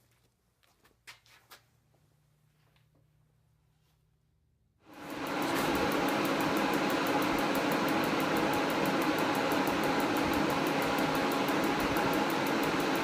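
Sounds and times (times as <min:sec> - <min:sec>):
heater fan and burner rushing: 0:04.8 - 0:13.0
faint fast ticking: 0:05.0 - 0:13.0.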